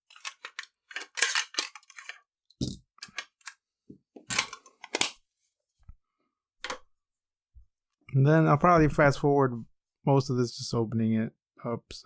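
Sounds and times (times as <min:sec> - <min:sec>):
small tools clicking and rattling: 0:00.1 - 0:03.6.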